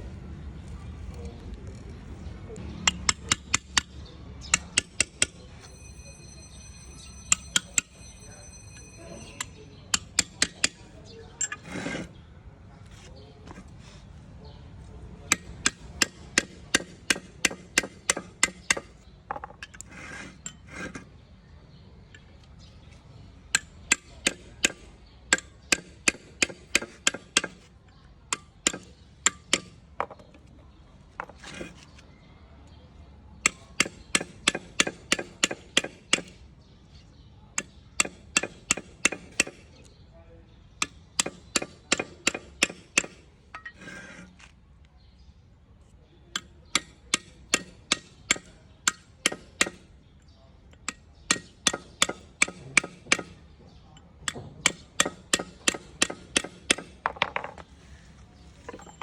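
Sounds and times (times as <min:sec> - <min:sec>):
hammer striking sharp blows: 0:02.8 - 0:05.4, 0:15.3 - 0:19.0, 0:23.6 - 0:27.6, 0:33.5 - 0:36.4, 0:37.6 - 0:39.6, 0:40.8 - 0:43.3, 0:46.4 - 0:49.9, 0:50.9 - 0:53.4, 0:54.3 - 0:57.0.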